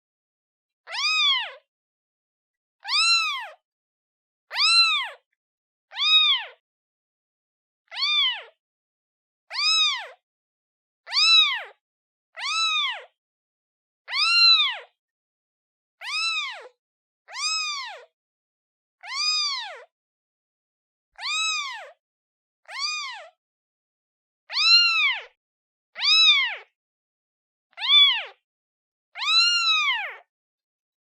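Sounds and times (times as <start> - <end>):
kitten meowing: 0.9 - 1.6, 2.8 - 3.6, 4.5 - 5.2, 5.9 - 6.6, 7.9 - 8.5, 9.5 - 10.2, 11.1 - 11.7, 12.4 - 13.1, 14.1 - 14.9, 16.0 - 16.7, 17.3 - 18.1, 19.0 - 19.9, 21.2 - 22.0, 22.7 - 23.3, 24.5 - 25.4, 26.0 - 26.7, 27.8 - 28.4, 29.2 - 30.2.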